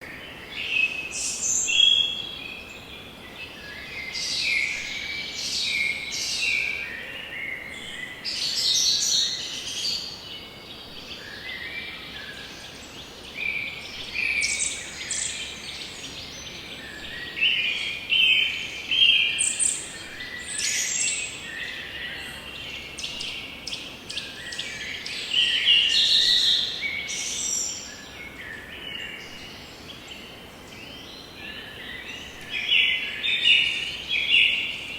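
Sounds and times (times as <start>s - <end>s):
faint background hiss: 0.0s - 34.9s
songbirds singing: 0.0s - 34.9s.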